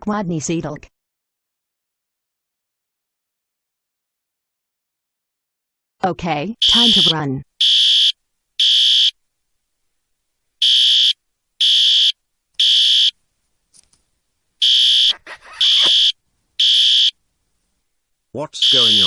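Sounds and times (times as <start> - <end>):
fire alarm beeps: 6.6 - 9.1, 10.6 - 13.1, 14.6 - 17.1, 18.6 - 19.0.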